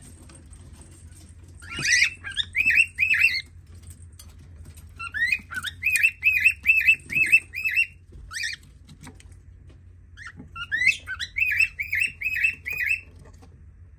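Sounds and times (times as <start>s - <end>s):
parrot chirping rapidly: 1.6s - 3.5s, 4.9s - 8.6s, 10.2s - 13.1s.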